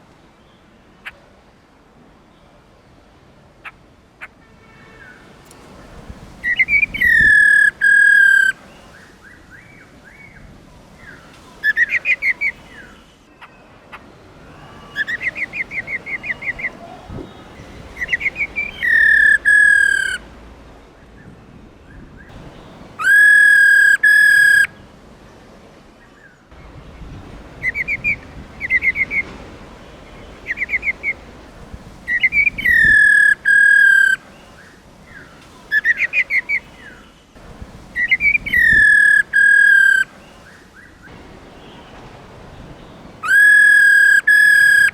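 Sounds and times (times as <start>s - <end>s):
bird whistled calls: 6.4s - 8.6s, 14.5s - 20.2s, 23.0s - 24.7s, 27.6s - 29.4s, 30.4s - 31.2s, 32.1s - 34.3s, 38.0s - 40.9s, 43.2s - 44.9s
bird rattling trills: 18.0s - 20.2s.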